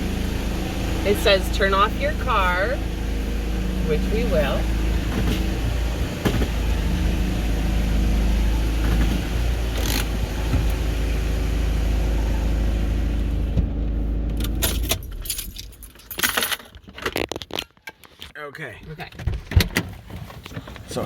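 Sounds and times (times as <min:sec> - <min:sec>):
car engine idling: 0:00.0 - 0:16.6.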